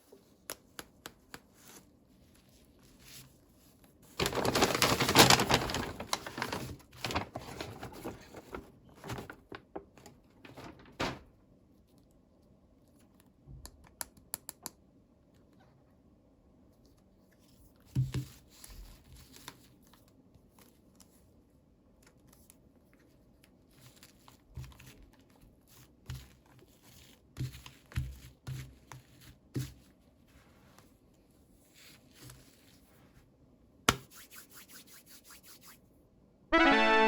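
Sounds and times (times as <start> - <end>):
packaging rustling and tearing: 4.1 - 11.2.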